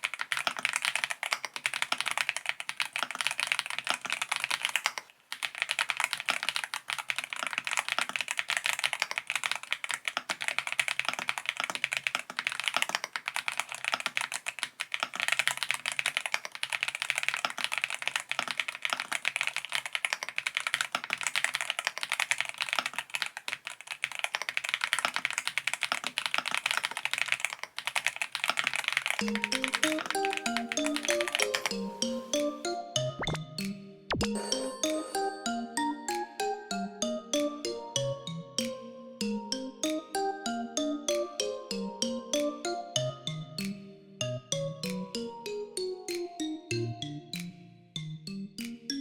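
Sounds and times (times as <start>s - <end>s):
fast typing on mechanical keyboard: 0.0s - 32.4s.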